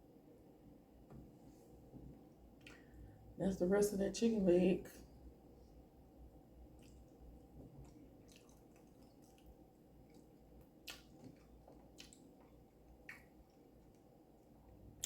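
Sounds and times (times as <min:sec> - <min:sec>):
person chewing with mouth clicks: 0:07.8 - 0:14.0.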